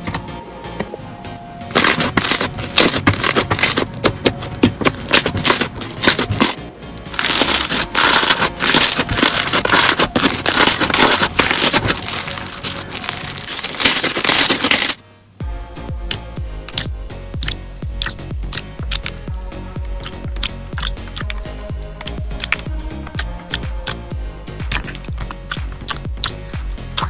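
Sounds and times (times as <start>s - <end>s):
slime crackling and popping: 1.7s - 15.0s, 16.7s - 19.2s.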